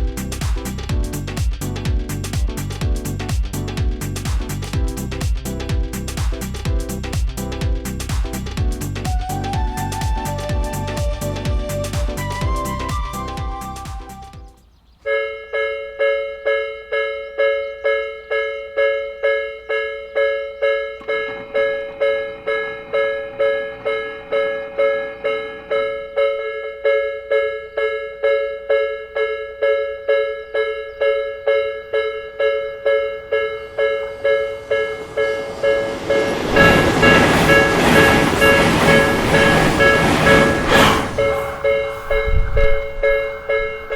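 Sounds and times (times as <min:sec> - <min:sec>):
train rumbling: 0:00.0 - 0:14.6, 0:20.0 - 0:28.0, 0:31.9 - 0:43.9
level-crossing warning bell: 0:15.1 - 0:43.9.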